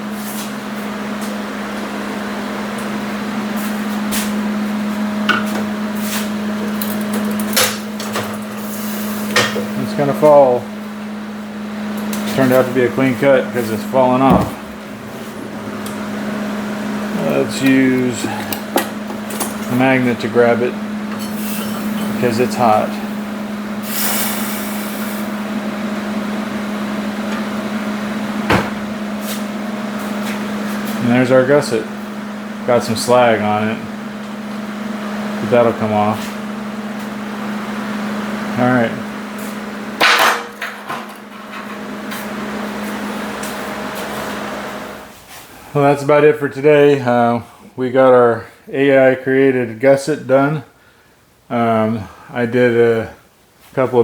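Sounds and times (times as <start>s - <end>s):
constant low hum: 0.0s - 44.2s
hiss: 23.8s - 25.3s.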